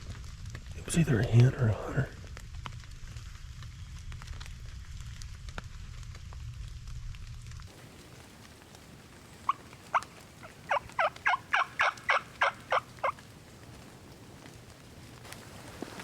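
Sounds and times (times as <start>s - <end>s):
turkey yelps: 9.2s - 13.3s.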